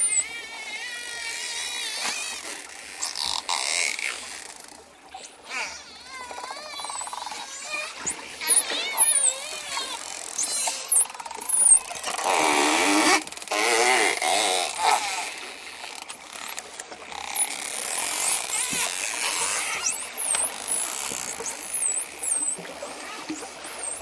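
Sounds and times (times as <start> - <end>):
dolphin whistles: 0.0 - 1.7, 5.1 - 13.2, 16.4 - 17.6, 18.2 - 24.0
dolphin buzzy squawks: 0.0 - 4.2, 5.0 - 15.7, 16.3 - 24.0
dolphin clicks: 0.0 - 24.0.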